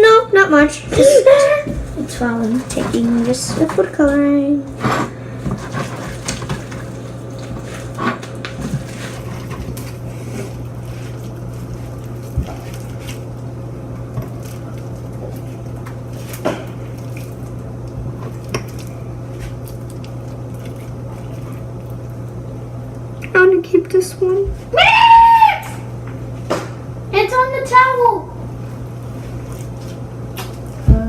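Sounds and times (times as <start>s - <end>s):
steady low hum: 0.0s - 31.0s
slime squishing: 0.8s - 23.1s.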